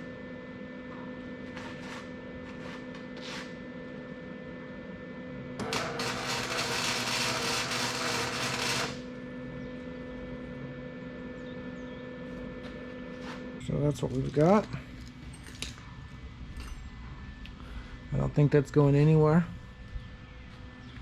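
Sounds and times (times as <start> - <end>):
steady shop hum: 0.0 - 21.0
metalworking tool on steel: 5.6 - 9.0.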